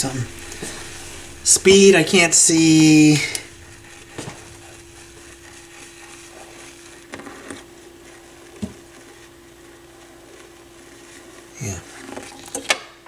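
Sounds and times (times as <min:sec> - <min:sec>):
turntable hum: 0:00.0 - 0:06.6.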